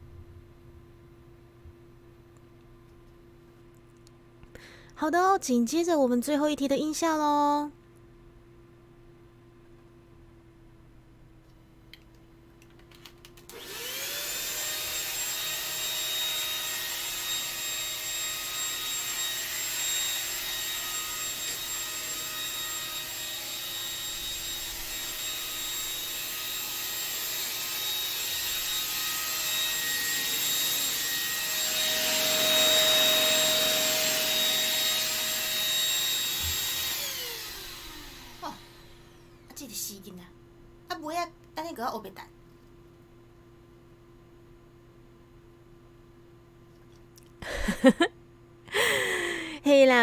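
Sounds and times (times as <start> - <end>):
vacuum cleaner motor whine: 13.4 - 39.6.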